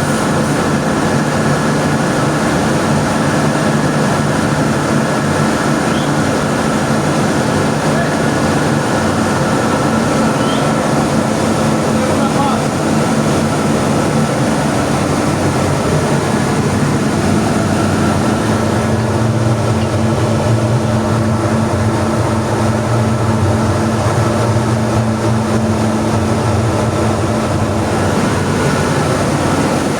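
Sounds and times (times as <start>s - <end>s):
machinery droning: 0.0s - 29.9s.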